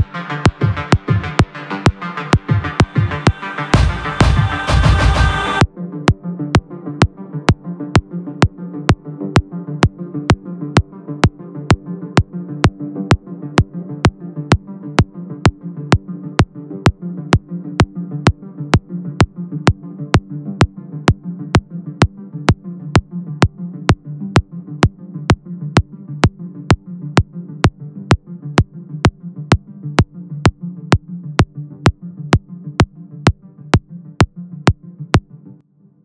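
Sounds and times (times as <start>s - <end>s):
hard beat of sharp hits: 0.0s - 5.6s
electro house music: 0.0s - 35.6s
low synth chords: 0.0s - 35.6s.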